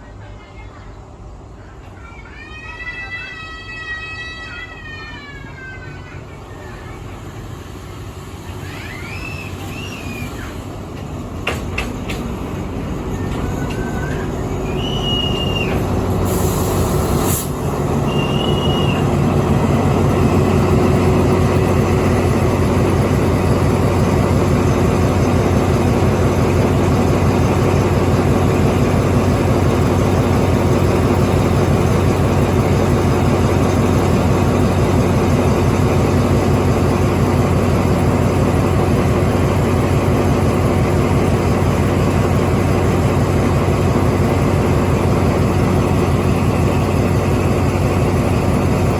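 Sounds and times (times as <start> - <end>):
diesel train engine humming: 0.0 - 48.9
short high squeals: 13.1 - 19.2.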